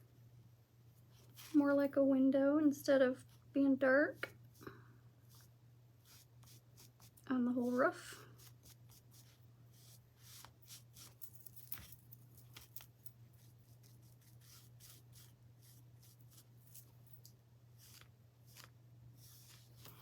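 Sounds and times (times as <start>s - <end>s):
low electrical hum: 0.0s - 20.0s
paintbrush brushing on wood: 5.3s - 11.2s, 13.4s - 16.6s, 17.8s - 19.8s.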